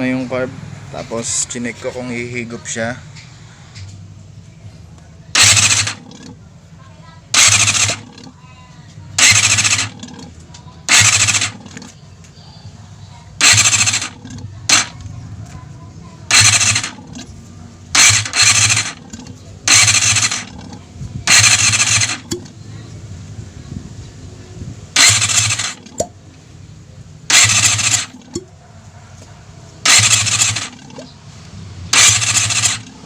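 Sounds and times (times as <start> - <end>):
engine cranking on electric starter: 5.3 - 6.4, 7.2 - 8.5, 9.1 - 12.0, 13.3 - 15.6, 16.3 - 22.7, 24.9 - 26.2, 27.2 - 28.5, 29.8 - 33.0.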